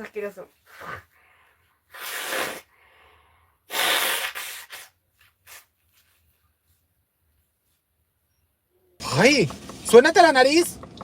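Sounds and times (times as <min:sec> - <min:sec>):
woman blowing her nose: 0:01.9 - 0:02.8, 0:03.6 - 0:05.7
faint snuffles: 0:01.9 - 0:03.0, 0:03.7 - 0:05.6.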